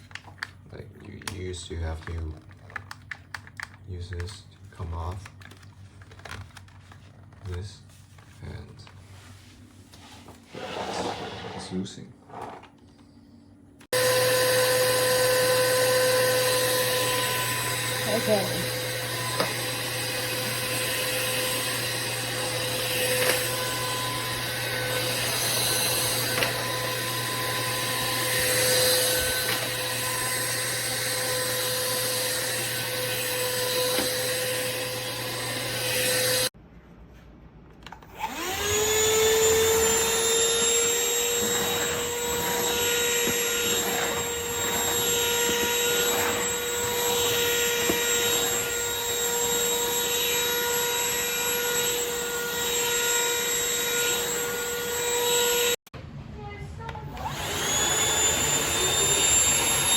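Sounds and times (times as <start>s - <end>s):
vacuum motor whining: 13.9s - 36.5s, 38.0s - 55.8s, 57.1s - 59.9s.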